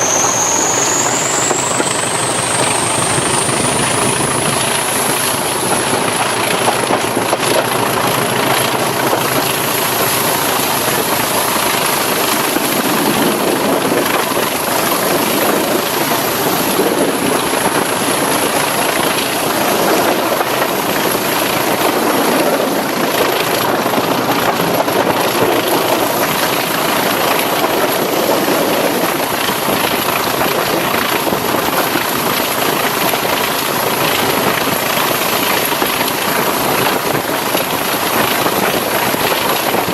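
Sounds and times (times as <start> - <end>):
thin high whistle: 0.0 - 5.2
diesel locomotive engine throbbing: 0.0 - 39.9.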